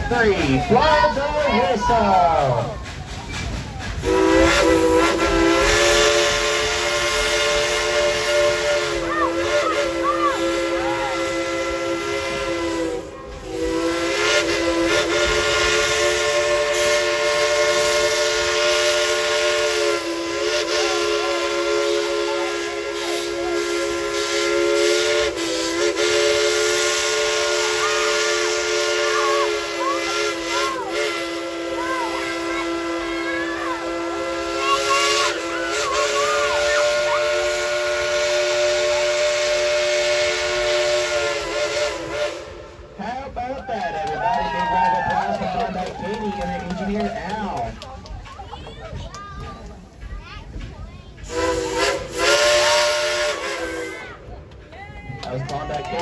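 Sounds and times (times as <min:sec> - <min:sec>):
steam locomotive whistle: 0:03.9 - 0:43.0, 0:51.2 - 0:54.3.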